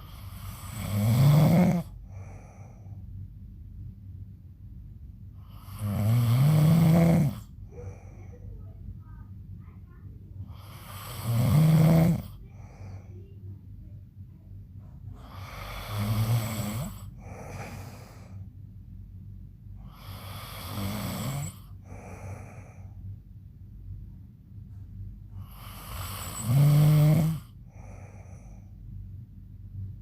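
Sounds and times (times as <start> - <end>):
man snoring loudly: 0.1 - 2.4, 5.5 - 7.5, 10.5 - 12.4, 15.2 - 18.3, 19.9 - 22.7, 25.4 - 28.2.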